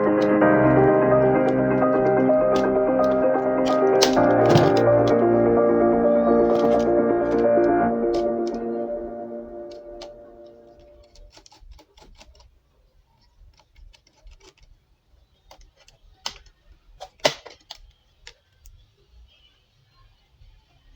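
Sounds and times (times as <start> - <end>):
music tone: 0.0 - 11.0
laptop keyboard typing: 0.0 - 12.5, 13.4 - 14.7.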